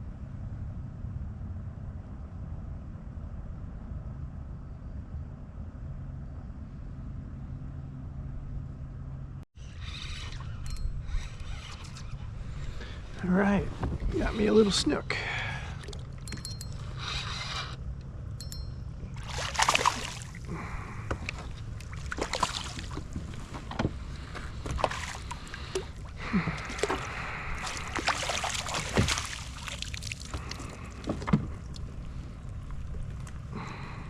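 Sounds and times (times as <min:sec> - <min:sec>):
low steady rumble: 0:00.0 - 0:34.0
knocks and rustles on kayak: 0:13.7 - 0:14.2, 0:21.1 - 0:26.0, 0:27.8 - 0:33.4
water splashing: 0:15.6 - 0:16.5, 0:19.1 - 0:32.6.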